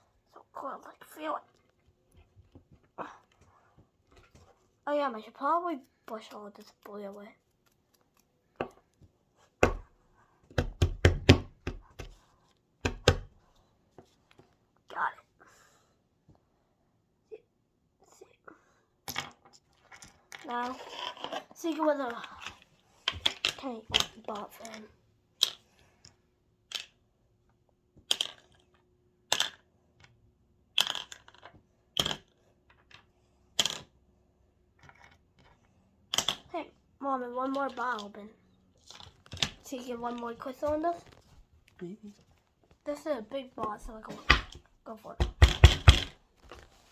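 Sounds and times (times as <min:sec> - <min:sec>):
tool knocking on plaster: 0:09.6 - 0:09.9, 0:10.5 - 0:12.2, 0:12.8 - 0:13.3, 0:45.2 - 0:46.2
hard object tapping on hard surface: 0:10.5 - 0:12.2, 0:12.8 - 0:13.3, 0:45.2 - 0:46.2.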